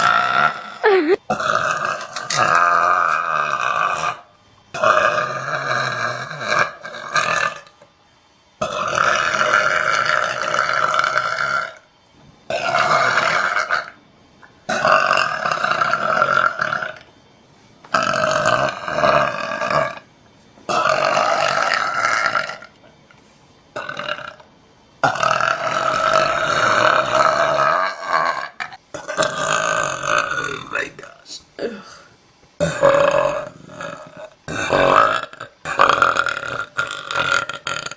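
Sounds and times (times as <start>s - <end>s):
woman burping: 0.6s - 1.6s.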